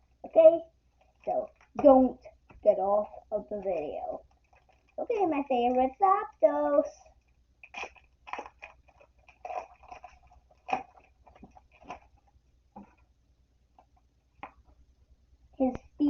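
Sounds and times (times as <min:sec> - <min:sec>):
plastic packaging crinkling: 0:01.0 - 0:01.9, 0:03.0 - 0:06.4, 0:07.1 - 0:13.0.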